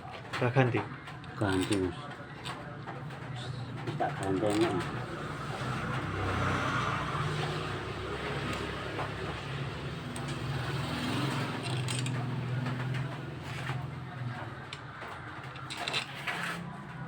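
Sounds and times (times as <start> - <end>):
vehicle engine humming: 4.7 - 15.8.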